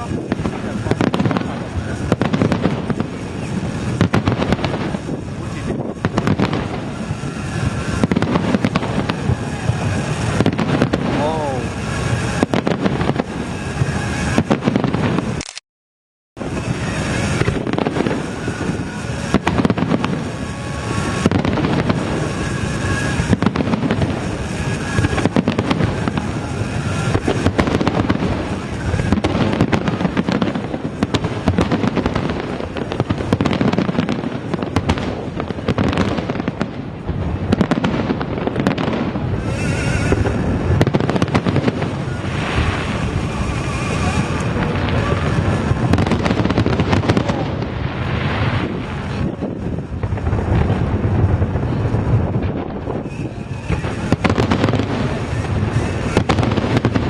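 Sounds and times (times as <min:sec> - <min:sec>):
fireworks bursting and crackling: 0:00.0 - 0:15.6, 0:16.4 - 0:57.0.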